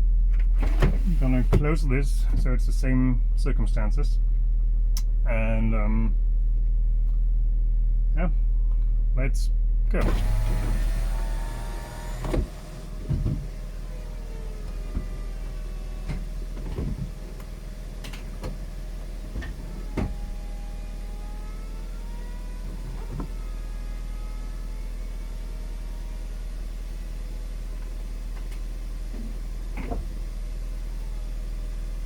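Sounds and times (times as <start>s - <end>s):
car engine idling: 0.0s - 32.0s
roof drive motor whining: 9.9s - 32.0s.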